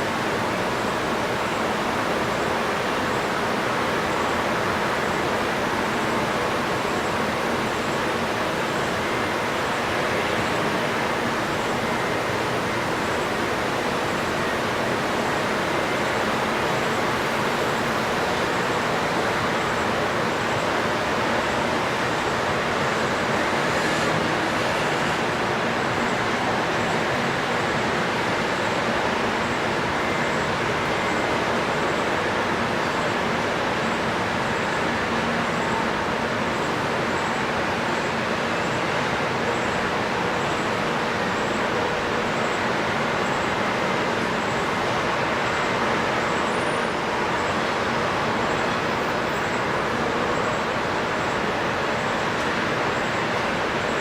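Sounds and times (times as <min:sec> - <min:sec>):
outdoor rushing noise: 0:21.6 - 0:30.4.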